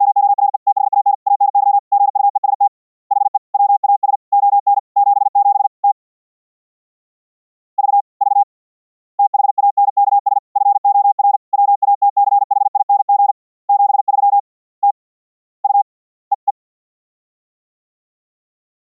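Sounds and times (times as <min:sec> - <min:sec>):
morse code tone: 0:00.0 - 0:06.0, 0:07.8 - 0:08.5, 0:09.2 - 0:14.4.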